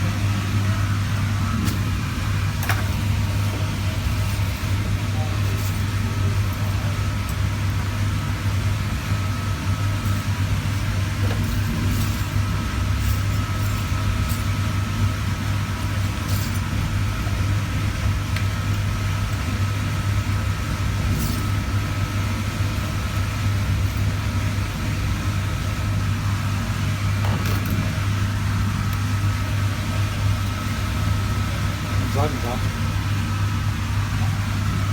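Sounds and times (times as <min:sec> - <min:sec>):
low mechanical hum: 0:00.0 - 0:34.9.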